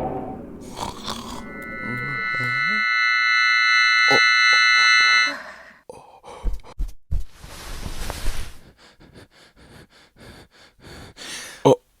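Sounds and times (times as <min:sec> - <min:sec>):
hissing noise: 0:00.4 - 0:05.3.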